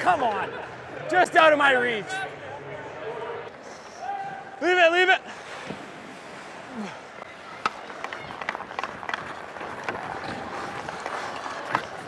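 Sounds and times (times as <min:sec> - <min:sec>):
skate and rink noise: 0:00.0 - 0:12.0
sticks and puck clacking: 0:07.2 - 0:12.0.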